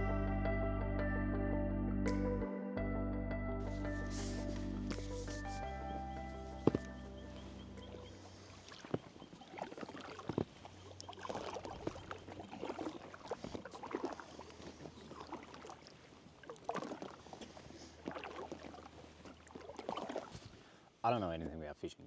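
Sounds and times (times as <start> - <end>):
paddle splashing in water: 3.7 - 20.9.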